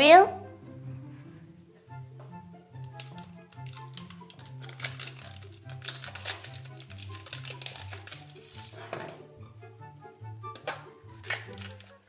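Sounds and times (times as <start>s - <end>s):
wrapper crinkling and tearing: 2.8s - 9.2s, 11.1s - 12.0s.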